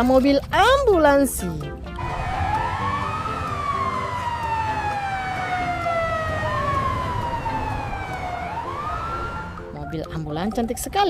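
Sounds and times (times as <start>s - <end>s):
wailing siren: 2.0s - 9.8s.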